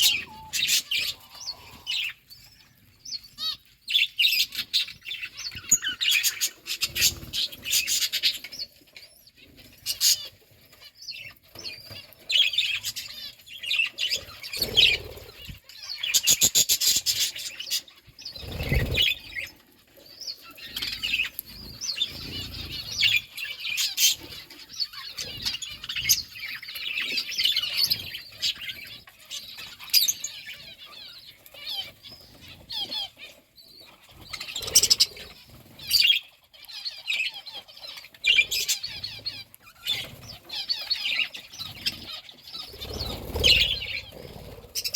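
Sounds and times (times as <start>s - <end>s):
budgerigars chattering: 0.0s - 2.2s, 3.2s - 19.5s, 20.2s - 44.9s
wing flutter: 18.4s - 19.5s, 41.8s - 44.9s.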